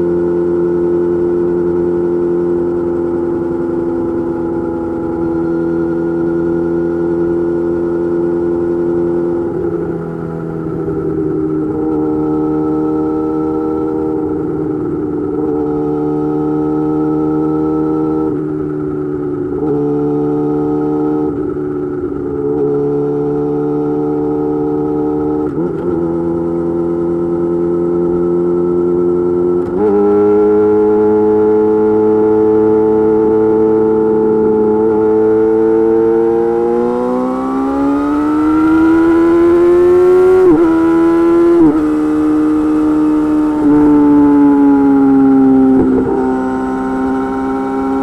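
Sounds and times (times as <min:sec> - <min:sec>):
motorcycle engine revving: 0:00.0 - 0:48.0
gear changes: 0:37.4 - 0:48.0.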